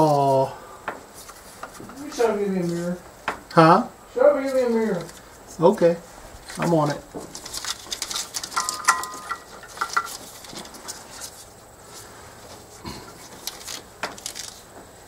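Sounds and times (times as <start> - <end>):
tools clattering and clinking: 6.6 - 11.4.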